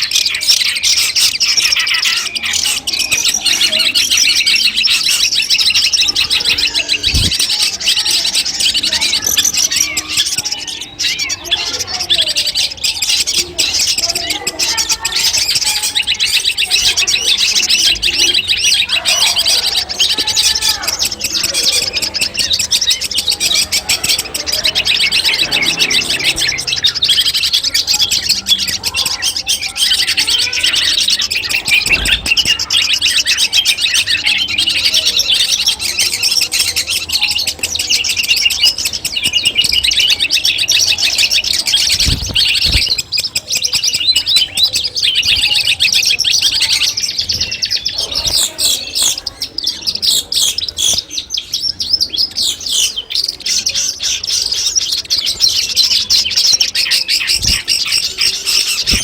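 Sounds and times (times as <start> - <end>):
bird chattering song: 0.0 - 59.0.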